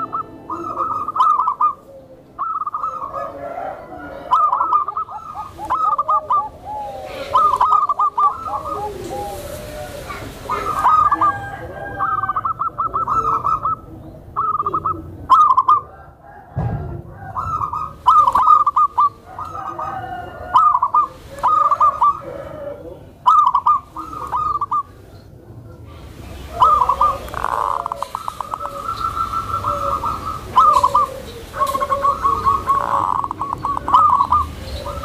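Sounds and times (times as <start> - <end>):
dove cooing: 0.0 - 35.0.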